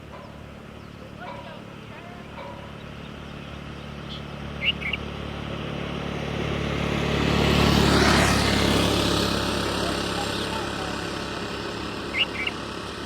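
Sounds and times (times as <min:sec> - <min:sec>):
bird chirps: 0:00.0 - 0:05.2, 0:12.1 - 0:12.6
motor vehicle passing by: 0:00.0 - 0:13.0.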